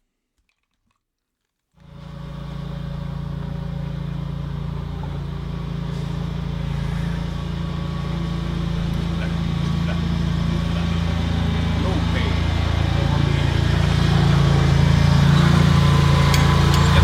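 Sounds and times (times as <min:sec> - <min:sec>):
low engine drone: 0:01.8 - 0:17.0.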